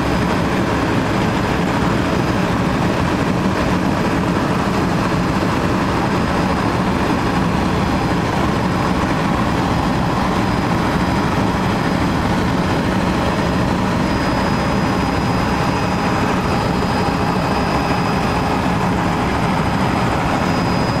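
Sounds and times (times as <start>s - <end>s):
helicopter engine and rotor noise: 0.0s - 21.0s
faint high whine: 1.5s - 21.0s.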